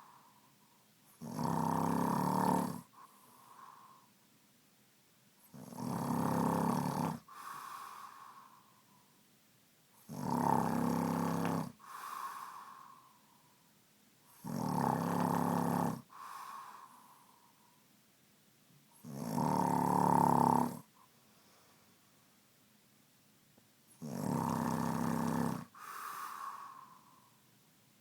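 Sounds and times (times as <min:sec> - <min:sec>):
soft breath: 0:00.0 - 0:01.0, 0:02.8 - 0:04.2, 0:07.2 - 0:09.2, 0:11.8 - 0:13.8, 0:16.1 - 0:18.0, 0:20.9 - 0:22.4, 0:25.6 - 0:27.6
man snoring: 0:01.2 - 0:02.9, 0:05.5 - 0:07.3, 0:10.1 - 0:12.6, 0:14.4 - 0:16.2, 0:19.0 - 0:20.9, 0:24.0 - 0:27.0.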